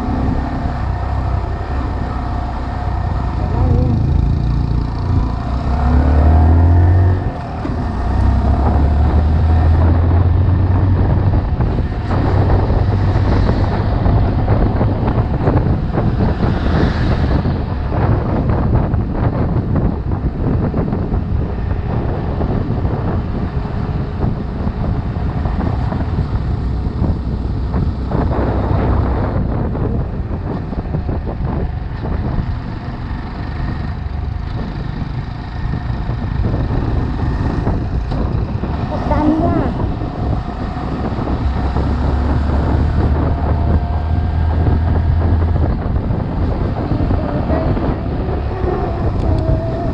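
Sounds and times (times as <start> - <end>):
motorcycle engine running: 0.0 - 16.7, 17.3 - 49.9
wind rushing over microphone: 0.0 - 49.9.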